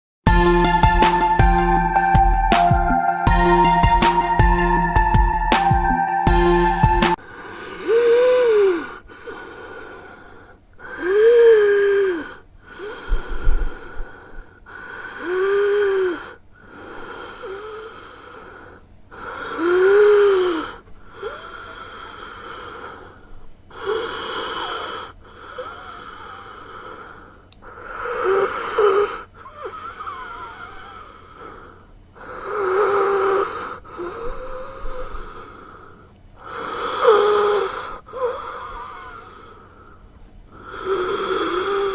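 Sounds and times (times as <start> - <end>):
heavy wheezing breathing: 21.1 - 41.9.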